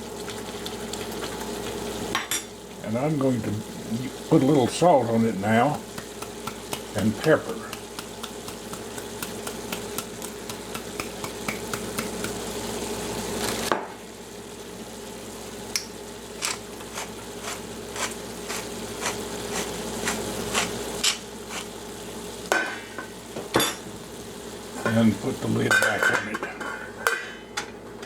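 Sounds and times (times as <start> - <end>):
food sizzling in a skillet: 0.0 - 28.0
utensil clicking against pan: 5.9 - 12.4.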